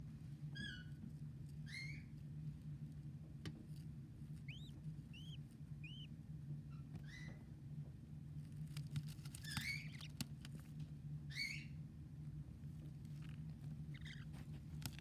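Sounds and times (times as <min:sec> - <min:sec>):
steady low hum: 0:00.0 - 0:15.0
baby budgerigars chirping: 0:00.6 - 0:00.9, 0:01.7 - 0:02.1, 0:04.4 - 0:07.4, 0:09.2 - 0:10.2, 0:11.3 - 0:11.8, 0:13.1 - 0:15.0.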